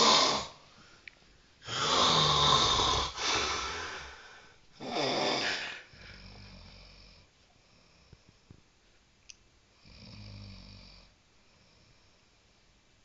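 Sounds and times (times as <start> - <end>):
person snoring loudly: 0.0 - 0.6, 1.6 - 4.0, 4.8 - 7.2
quiet breath: 0.0 - 8.7, 9.6 - 12.7.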